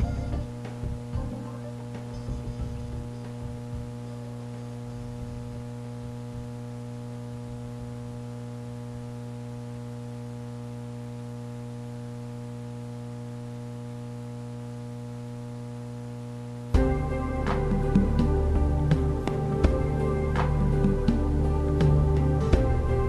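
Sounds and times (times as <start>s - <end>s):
background music: 0.0s - 3.9s, 16.8s - 23.0s
electrical mains hum: 0.0s - 23.0s.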